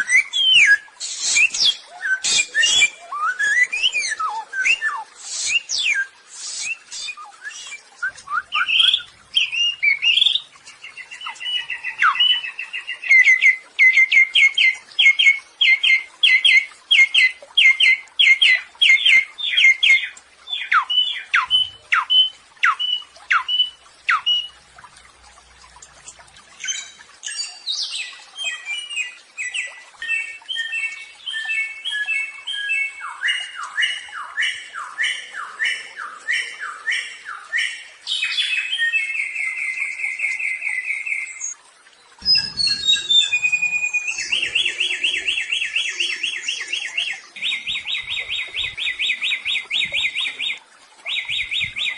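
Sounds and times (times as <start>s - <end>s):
songbird whistling: 0.0s - 10.4s, 42.2s - 51.9s.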